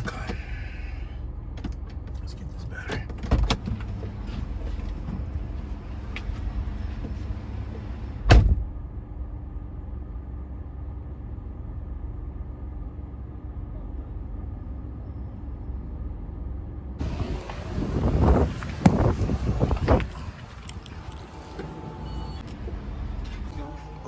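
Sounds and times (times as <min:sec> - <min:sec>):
car door shutting: 0:06.0 - 0:08.7, 0:17.0 - 0:23.5
handling noise: 0:17.0 - 0:23.5.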